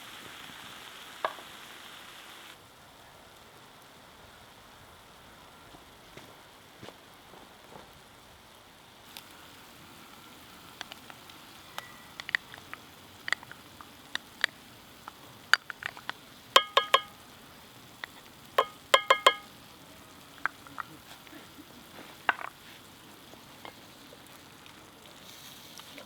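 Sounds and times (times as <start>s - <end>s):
food frying in a pan: 0.0s - 5.3s, 6.5s - 26.0s
utensil knocking against pan: 16.6s - 17.2s, 18.6s - 19.5s.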